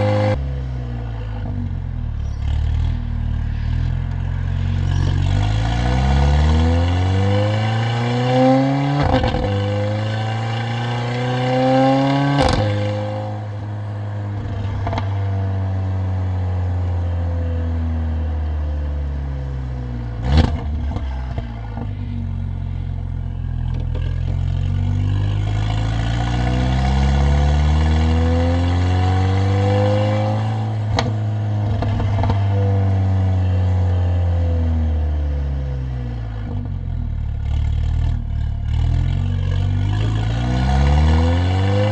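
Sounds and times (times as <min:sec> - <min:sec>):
car engine accelerating: 0:00.0 - 0:41.9
exhaust crack on upshift: 0:12.1 - 0:15.2
loud exhaust pop: 0:12.3 - 0:15.1.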